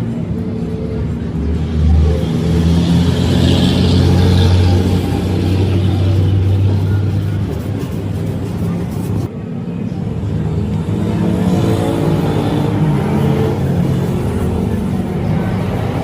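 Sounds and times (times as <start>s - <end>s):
engine running: 0.0s - 9.3s.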